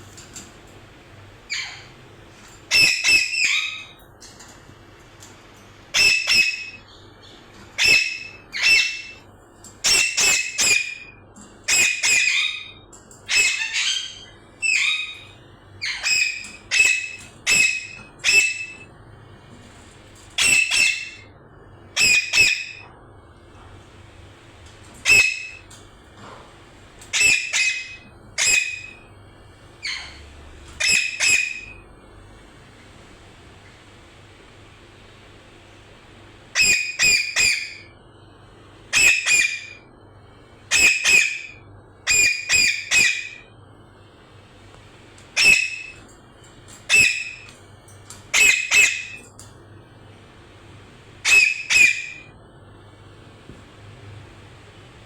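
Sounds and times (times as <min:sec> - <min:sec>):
parrot squawking: 0:01.5 - 0:01.9, 0:02.7 - 0:04.0, 0:05.9 - 0:06.8, 0:07.8 - 0:09.2, 0:09.8 - 0:11.1, 0:11.7 - 0:18.9, 0:20.4 - 0:21.3, 0:22.0 - 0:22.9, 0:25.0 - 0:25.6, 0:27.1 - 0:29.0, 0:29.8 - 0:30.2, 0:30.8 - 0:31.8, 0:36.5 - 0:37.9, 0:38.9 - 0:39.8, 0:40.7 - 0:43.4, 0:45.4 - 0:46.0, 0:46.9 - 0:47.5, 0:48.3 - 0:49.3, 0:51.2 - 0:52.3.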